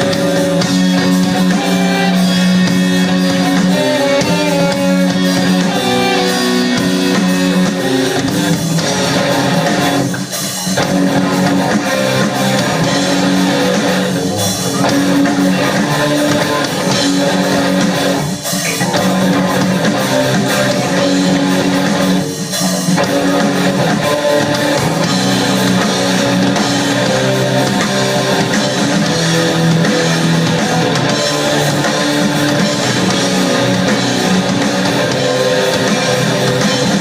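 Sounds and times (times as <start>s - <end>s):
drums: 0.0s - 37.0s
guitars playing chords: 0.0s - 37.0s.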